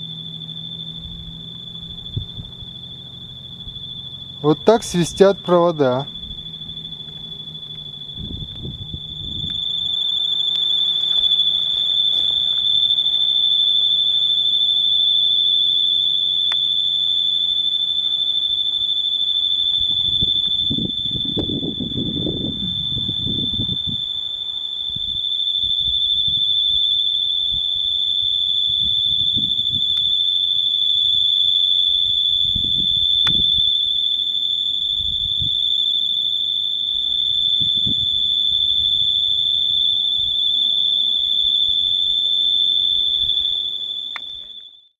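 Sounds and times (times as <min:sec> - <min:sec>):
overhead wires whistling: 0:00.0 - 0:44.9
wind buffeting microphone: 0:08.1 - 0:09.6, 0:19.9 - 0:24.0, 0:37.6 - 0:38.1.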